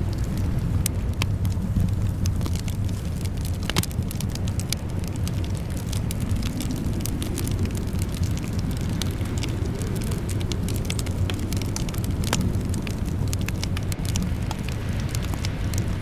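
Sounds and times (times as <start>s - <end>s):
low fire rumble: 0.0s - 16.0s
wood fire crackling and popping: 0.0s - 16.0s.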